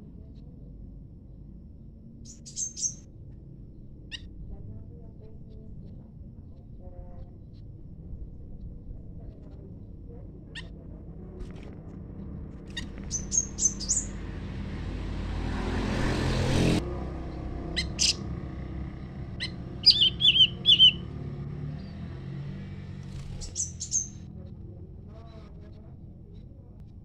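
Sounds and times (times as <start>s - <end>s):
songbirds chirping: 2.1s - 4.3s, 9.2s - 26.8s.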